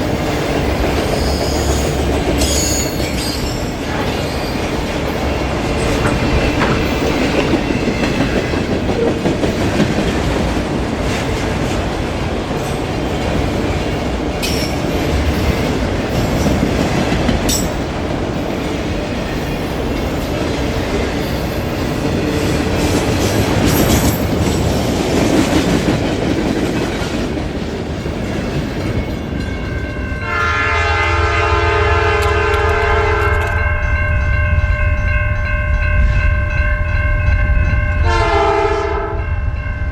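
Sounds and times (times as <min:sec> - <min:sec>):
train wheels clattering on rails: 0:00.0 - 0:31.3, 0:32.0 - 0:38.6
locomotive air horn: 0:30.2 - 0:33.7, 0:38.0 - 0:39.3.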